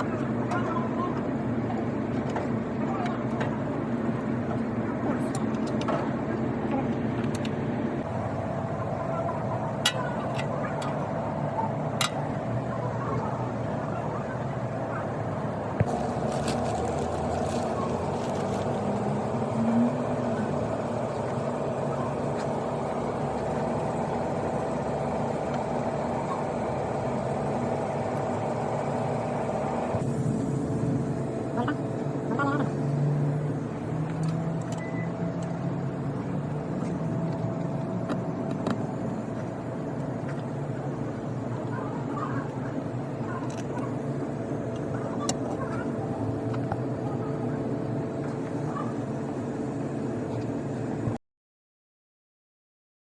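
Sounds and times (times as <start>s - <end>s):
engine idling: 15.6s - 50.5s.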